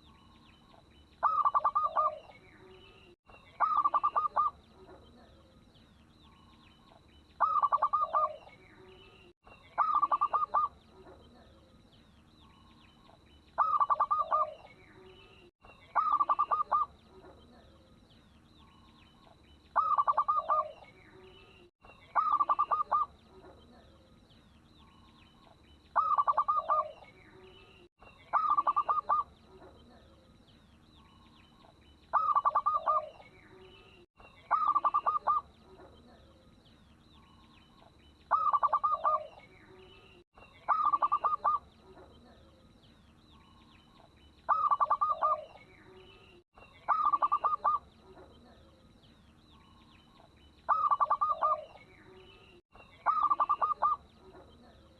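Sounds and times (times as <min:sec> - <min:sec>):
small birds chirping: 0:00.0 - 0:54.9
dove cooing in staccato trills: 0:01.2 - 0:02.3, 0:03.6 - 0:05.3, 0:07.4 - 0:08.5, 0:09.8 - 0:11.4, 0:13.6 - 0:14.7, 0:15.9 - 0:17.6, 0:19.8 - 0:20.9, 0:22.1 - 0:23.8, 0:26.0 - 0:27.1, 0:28.3 - 0:30.0, 0:32.1 - 0:33.2, 0:34.5 - 0:36.0, 0:38.3 - 0:39.4, 0:40.6 - 0:42.2, 0:44.5 - 0:45.6, 0:46.9 - 0:48.4, 0:50.7 - 0:51.8, 0:53.0 - 0:54.6.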